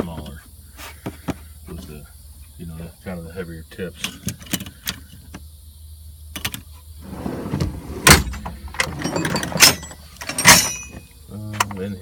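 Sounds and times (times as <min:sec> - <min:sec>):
metal drawers sliding on runners: 0:07.0 - 0:11.0
metal tools clinking: 0:08.0 - 0:11.2.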